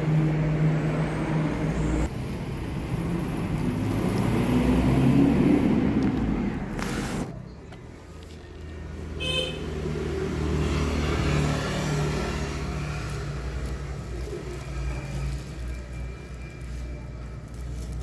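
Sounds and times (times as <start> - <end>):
engine and road rumble: 0.0 - 18.0
vehicle horn toot: 9.2 - 9.6.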